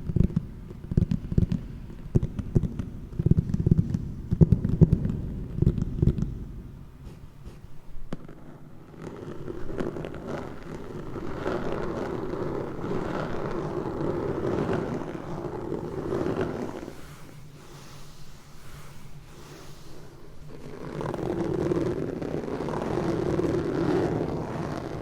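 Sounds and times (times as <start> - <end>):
whooshing rubbing noise: 9.0 - 25.0.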